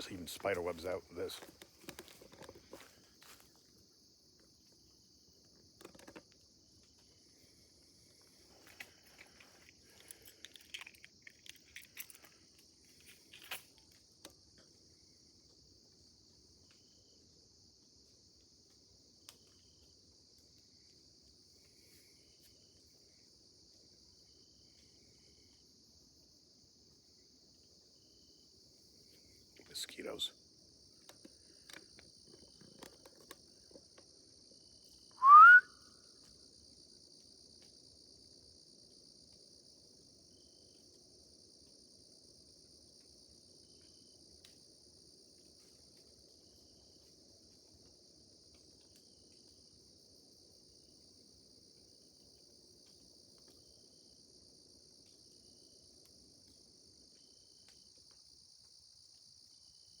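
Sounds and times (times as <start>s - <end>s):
crickets chirping: 0.0s - 60.0s
person whistling rising pitch: 35.2s - 35.7s.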